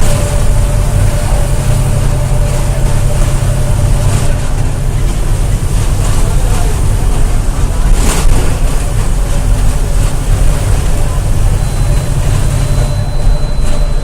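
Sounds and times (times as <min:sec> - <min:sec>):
bus wheels rumbling: 0:00.0 - 0:14.0
faint high whine: 0:11.5 - 0:14.0.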